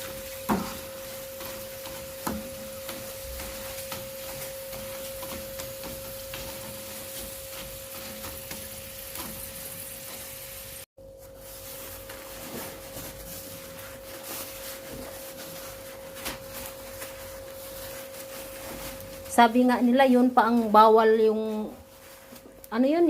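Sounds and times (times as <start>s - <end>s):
crackers sizzling in hot oil: 0.0s - 10.9s.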